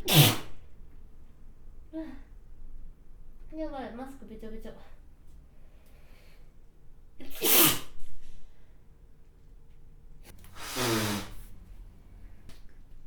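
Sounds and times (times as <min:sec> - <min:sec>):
woman sneezing: 0:00.0 - 0:00.5, 0:07.2 - 0:08.0.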